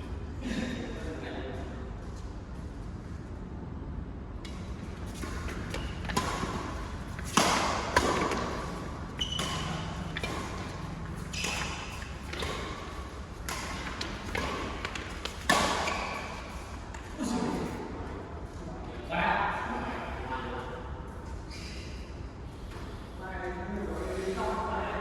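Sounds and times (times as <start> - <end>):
rackets hitting shuttlecock: 4.4 - 17.1
shoes squeaking on court floor: 5.0 - 17.0, 21.4 - 22.0.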